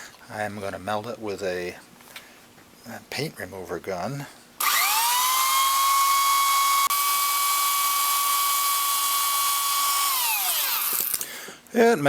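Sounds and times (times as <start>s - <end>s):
heat gun fan whine: 4.6s - 11.5s.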